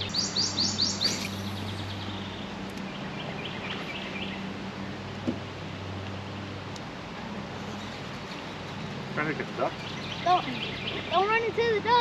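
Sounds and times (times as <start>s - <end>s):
outdoor background noise: 0.0s - 12.0s.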